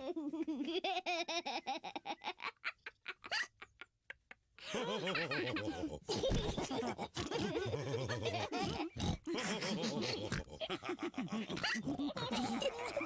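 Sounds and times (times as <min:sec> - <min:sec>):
cartoon characters laughing: 0:04.6 - 0:13.0.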